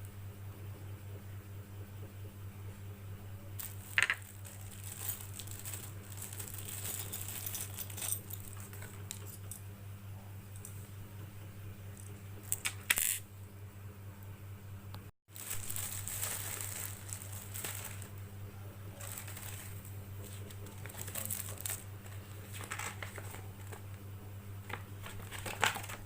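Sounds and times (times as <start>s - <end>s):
steady low hum: 0.0s - 26.0s
rustling packaging: 3.6s - 9.4s, 15.3s - 18.2s, 18.9s - 24.0s, 24.6s - 26.0s.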